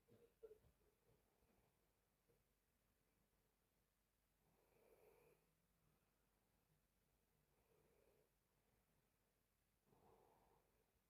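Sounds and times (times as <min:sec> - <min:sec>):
faint breath of sleeping woman: 0:04.4 - 0:05.7, 0:09.8 - 0:11.0.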